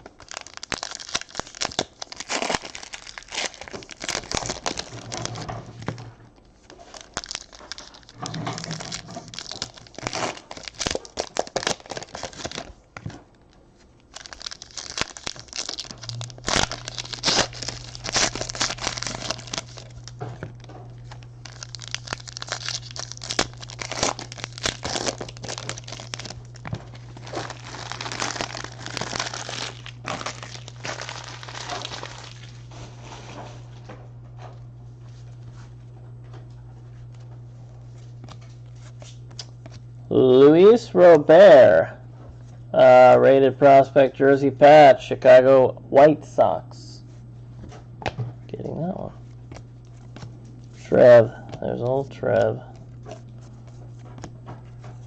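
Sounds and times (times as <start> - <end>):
foil wrappers crinkling and tearing: 0.0 - 33.8, 37.9 - 39.8, 48.7 - 55.0
steady low hum: 0.0 - 55.0
cards shuffled and handled: 49.5 - 55.0.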